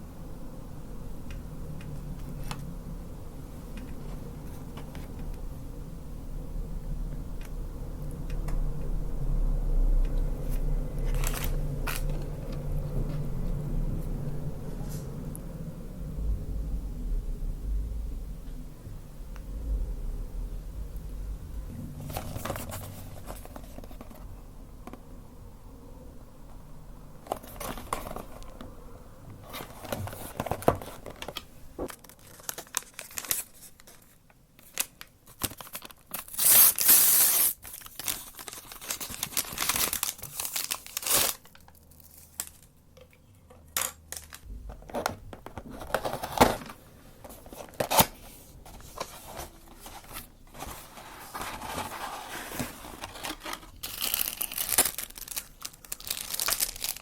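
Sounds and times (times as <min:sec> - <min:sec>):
food packaging crinkling and tearing: 0:11.0 - 0:12.7, 0:29.6 - 0:42.8, 0:45.7 - 0:57.0.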